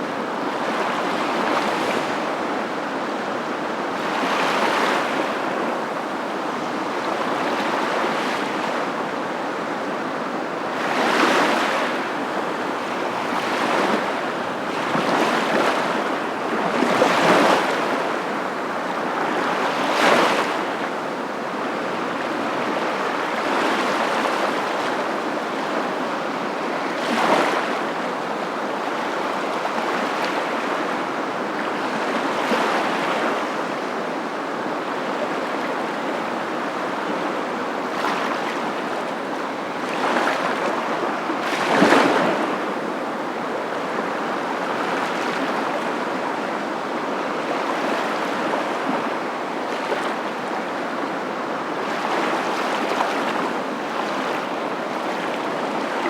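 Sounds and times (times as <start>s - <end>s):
steady wash of water: 0.0s - 9.2s, 10.4s - 34.6s, 35.4s - 56.0s
waves breaking: 10.7s - 21.2s, 22.0s - 28.1s, 37.8s - 46.3s, 51.6s - 56.0s.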